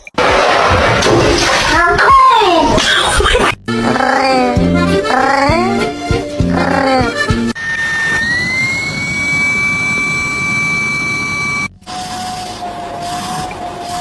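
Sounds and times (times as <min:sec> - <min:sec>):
motor whine with hiss: 0:07.6 - 0:14.0.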